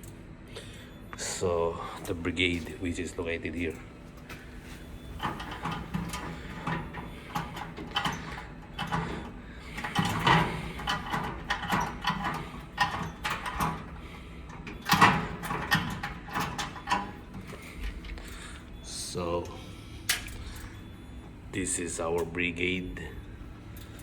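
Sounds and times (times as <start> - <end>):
mechanical clicks knocks and rattles: 3.6 - 18.4.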